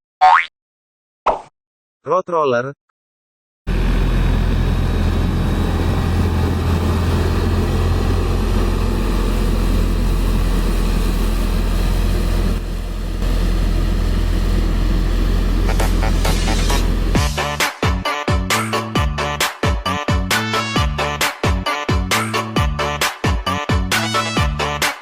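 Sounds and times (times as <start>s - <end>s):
road roller engine running: 3.7s - 17.6s.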